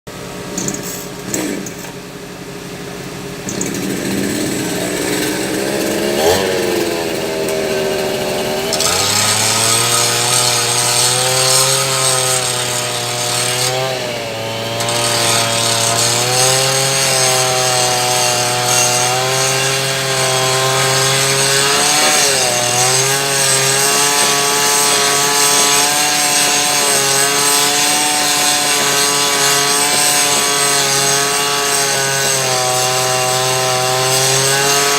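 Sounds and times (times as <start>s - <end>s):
excavator diesel engine: 0.1s - 34.9s
hydraulics working: 0.2s - 34.9s.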